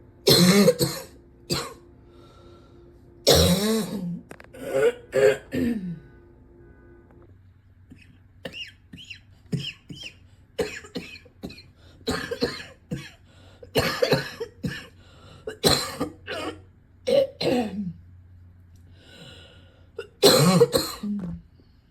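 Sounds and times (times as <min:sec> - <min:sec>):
person coughing: 0:00.3 - 0:01.8, 0:03.2 - 0:06.0, 0:07.9 - 0:18.0, 0:20.0 - 0:21.4.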